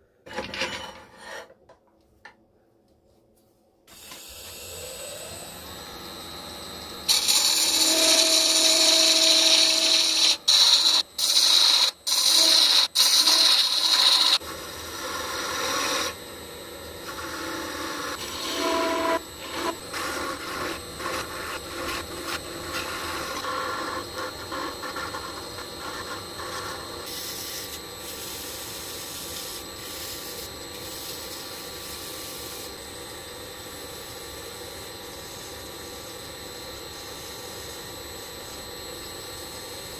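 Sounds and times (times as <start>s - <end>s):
hissing tool cutting wood: 17.0s - 32.8s.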